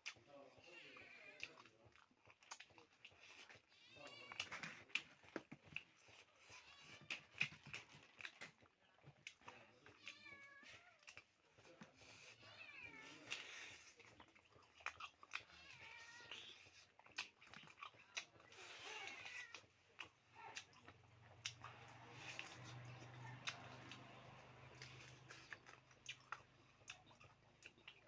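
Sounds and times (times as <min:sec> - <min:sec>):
cat meowing: 0:03.7 - 0:04.8, 0:09.7 - 0:11.1, 0:12.3 - 0:13.4, 0:15.4 - 0:16.6, 0:18.5 - 0:19.7.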